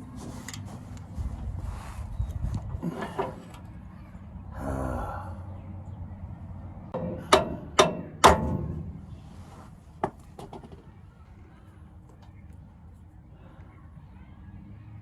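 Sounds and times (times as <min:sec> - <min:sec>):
person grunting with effort: 0:04.5 - 0:05.5.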